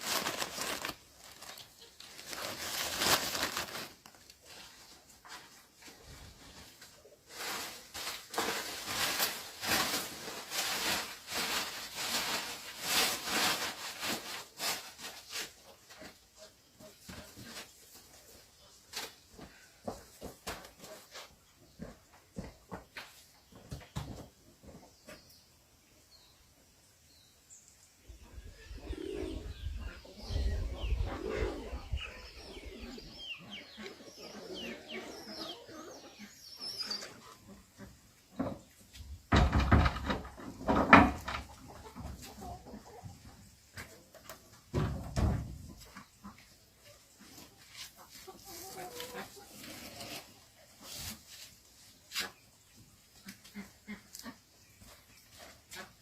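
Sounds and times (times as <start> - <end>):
rustling and scraping: 0.0 - 25.4, 28.3 - 56.0
low bird coos: 28.1 - 36.0.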